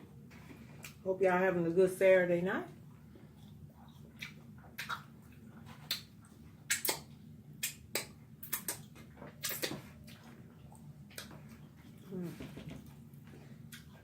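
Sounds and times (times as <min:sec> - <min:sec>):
person chewing: 0:02.9 - 0:12.3, 0:12.9 - 0:14.0
mouth clicks and smacks: 0:03.9 - 0:09.9.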